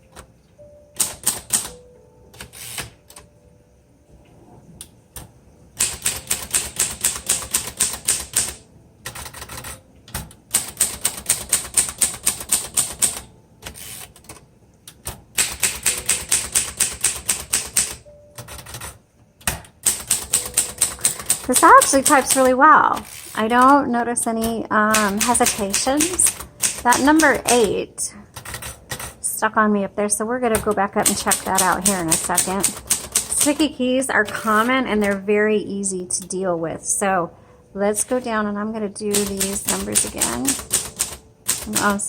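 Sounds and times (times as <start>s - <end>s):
typewriter keystrokes: 1.0s - 1.8s, 5.2s - 23.8s, 24.4s - 29.2s, 30.5s - 35.2s, 39.1s - 42.0s.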